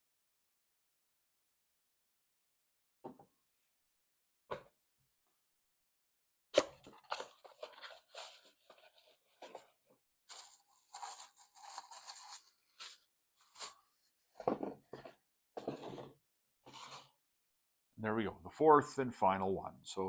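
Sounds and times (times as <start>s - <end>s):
packaging crunching and rustling: 10.3s - 13.8s.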